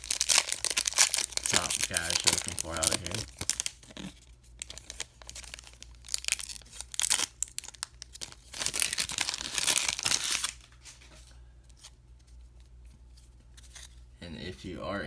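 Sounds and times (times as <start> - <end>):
plastic wrapper crinkling: 0.0 - 11.0.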